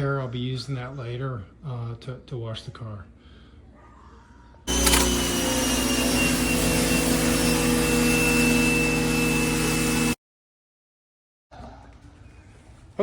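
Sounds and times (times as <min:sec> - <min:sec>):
pressure washer motor hum: 0:04.7 - 0:10.2.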